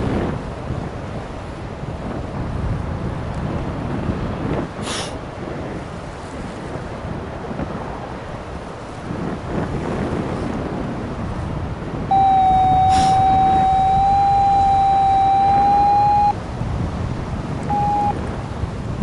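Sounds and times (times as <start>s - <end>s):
wind buffeting microphone: 0.0s - 19.0s
short beep: 12.1s - 16.4s, 17.7s - 18.2s
steady electronic tone: 12.1s - 16.4s, 17.7s - 18.2s.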